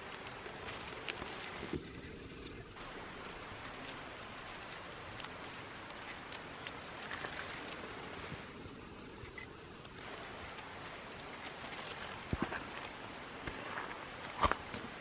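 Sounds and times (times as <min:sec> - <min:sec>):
steady outdoor hiss: 0:00.0 - 0:15.0
footsteps on walking track: 0:12.2 - 0:14.9.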